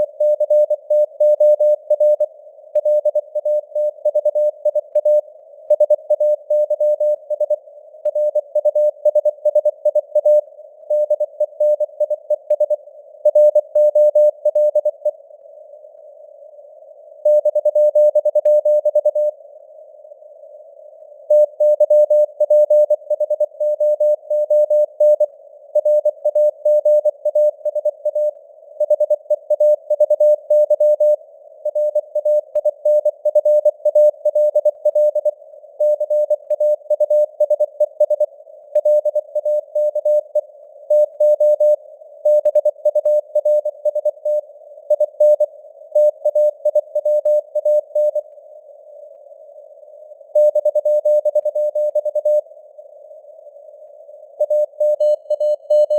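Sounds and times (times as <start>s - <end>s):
morse code beeps: 54.4s - 55.9s.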